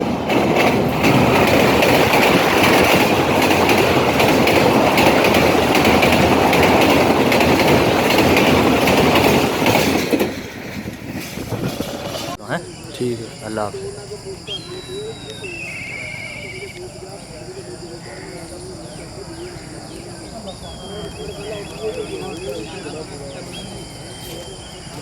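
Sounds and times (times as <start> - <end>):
train wheels clattering on rails: 0.0 - 12.4, 19.8 - 25.0.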